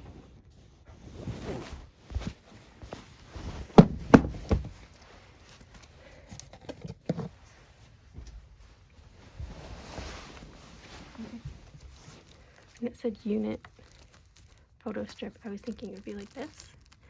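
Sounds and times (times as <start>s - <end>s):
items knocking on a table: 3.8s - 4.8s.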